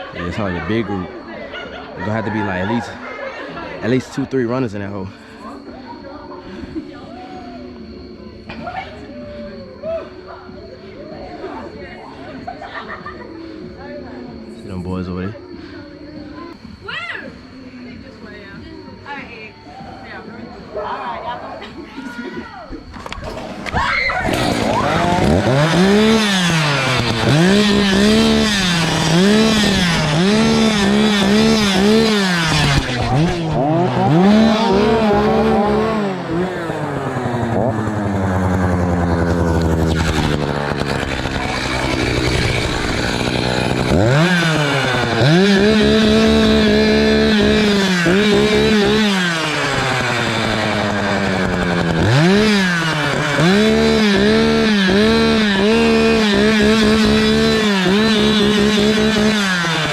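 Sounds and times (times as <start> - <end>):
chainsaw revving: 24.2 - 59.9.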